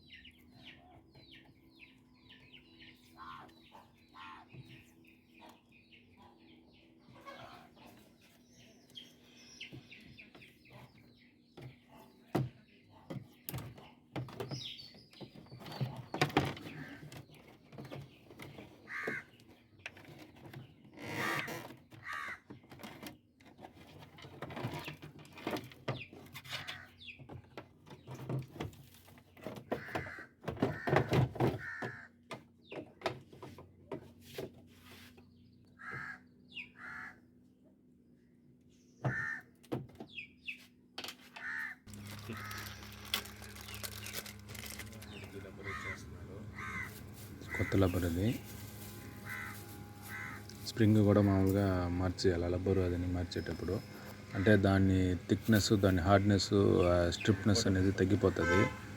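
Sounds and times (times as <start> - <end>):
crows cawing: 4.1 - 4.6, 18.9 - 19.4, 21.2 - 22.5, 29.8 - 32.2, 35.8 - 37.3, 39.1 - 39.6, 41.3 - 43.3, 45.5 - 48.0, 49.0 - 50.6, 58.4 - 58.9
tools being handled: 41.0 - 45.4.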